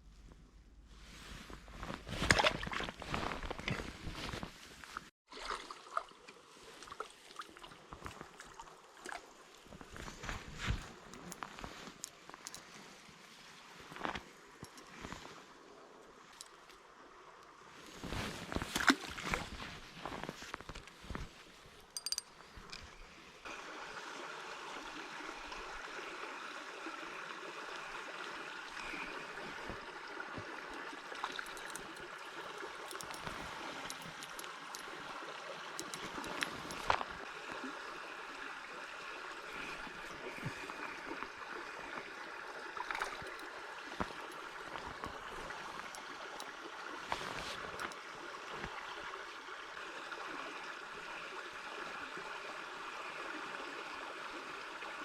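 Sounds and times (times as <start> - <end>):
faint clicks and knocks: 35.8 - 37.2.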